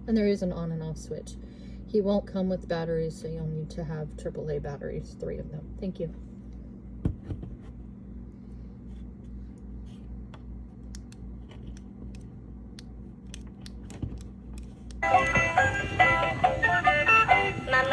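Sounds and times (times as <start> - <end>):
low steady hum: 0.0 - 17.9
tinny electronic toy song: 15.0 - 17.9.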